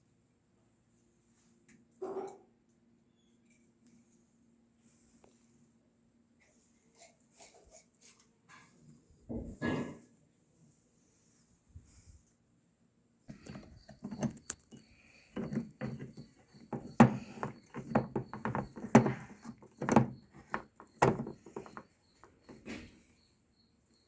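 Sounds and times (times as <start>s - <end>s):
sharp thuds and clicks: 13.3s - 22.7s
knocking and clattering: 13.3s - 22.8s.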